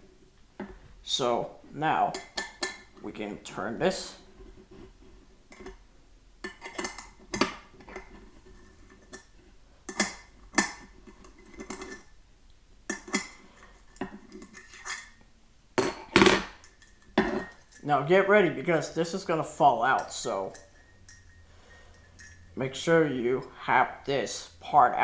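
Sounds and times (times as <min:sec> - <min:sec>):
wrench clinking on metal: 0:02.1 - 0:03.0, 0:06.4 - 0:09.3, 0:15.8 - 0:17.9, 0:19.0 - 0:22.6.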